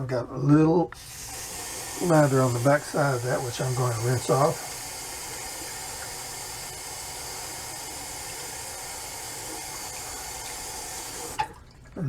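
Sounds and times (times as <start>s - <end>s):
water running from a tap: 1.0s - 11.8s.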